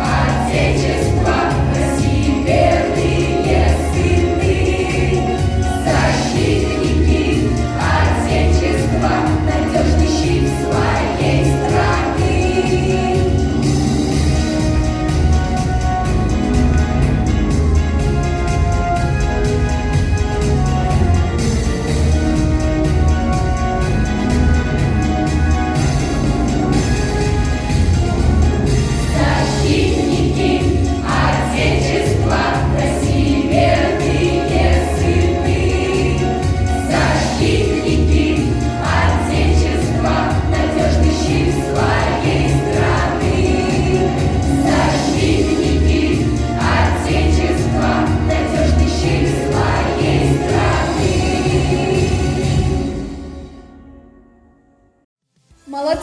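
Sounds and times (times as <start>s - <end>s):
children singing: 0.0s - 14.5s, 28.8s - 53.0s.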